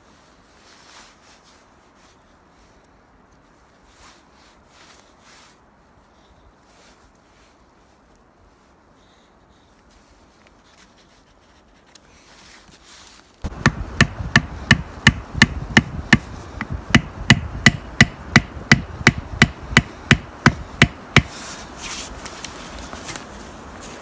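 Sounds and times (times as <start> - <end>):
sharp knocks on wood: 13.5 - 21.4.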